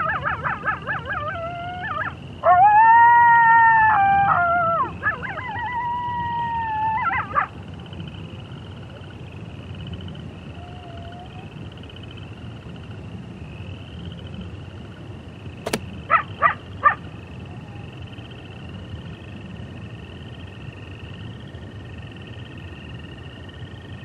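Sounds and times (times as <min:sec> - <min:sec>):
wolf yips: 0:00.0 - 0:07.5
sharp click: 0:15.6 - 0:15.9.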